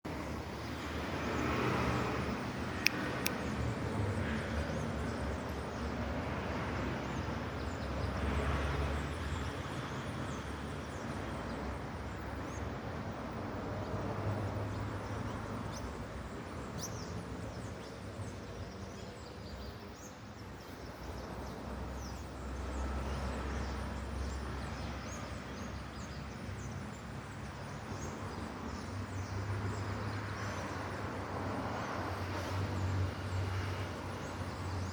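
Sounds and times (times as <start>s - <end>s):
sharp click: 2.8s - 3.4s
faint high ticks: 2.8s - 3.5s.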